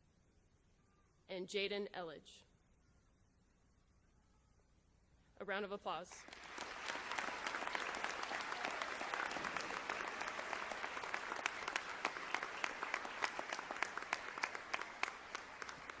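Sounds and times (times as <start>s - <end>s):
audience applauding: 6.2s - 16.0s.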